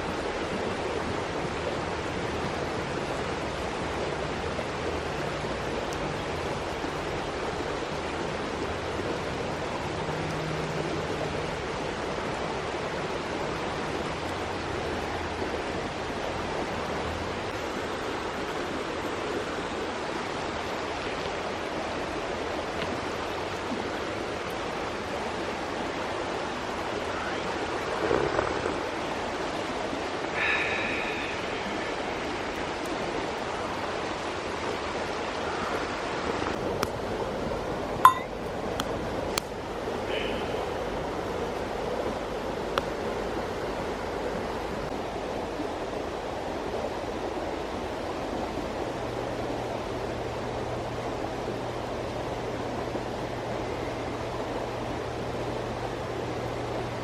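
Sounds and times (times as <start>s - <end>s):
stream rushing water: 0.0s - 57.0s
short high tone: 38.0s - 38.3s.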